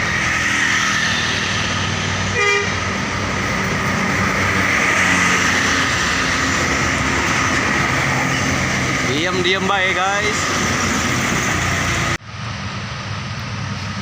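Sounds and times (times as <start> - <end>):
traffic passing: 0.0 - 14.0
vehicle horn toot: 2.3 - 2.8.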